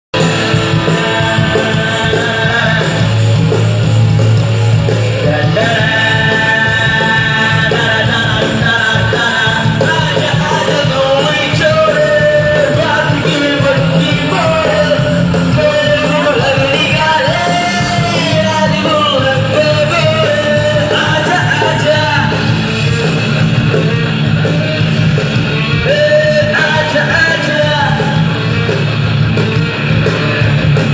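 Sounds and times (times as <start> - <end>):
bass guitar: 0.1 - 30.9
drums: 0.1 - 30.9
electric guitars: 0.1 - 30.9
person singing: 0.2 - 4.2, 5.1 - 22.7, 25.7 - 28.5.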